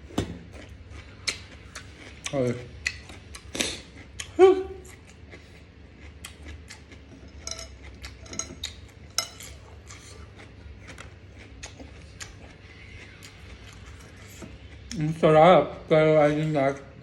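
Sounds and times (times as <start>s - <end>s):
cutlery clinking on a plate: 7.3s - 9.6s.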